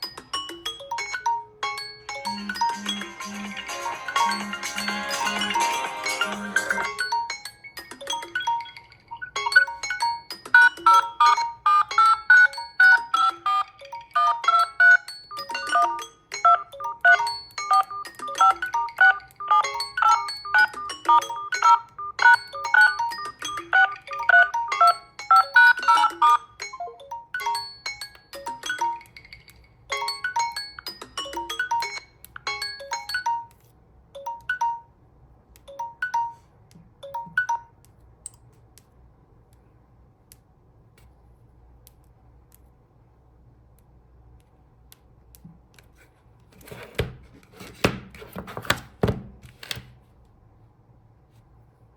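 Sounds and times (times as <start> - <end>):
phone ringtone melody: 0.0 - 33.6, 34.2 - 35.0, 35.7 - 37.8.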